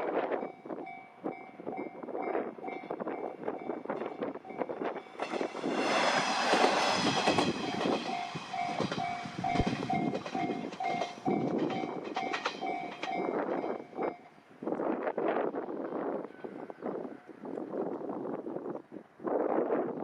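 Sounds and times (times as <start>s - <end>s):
crossing warning bell dinging: 0.3s - 14.4s
train wheels clacking on rails: 0.4s - 14.4s.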